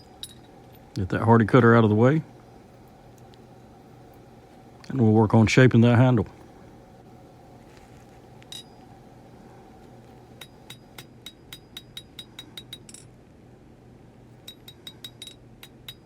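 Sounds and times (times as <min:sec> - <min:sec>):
hammer ringing on anvil: 0:10.4 - 0:13.1, 0:14.5 - 0:16.0.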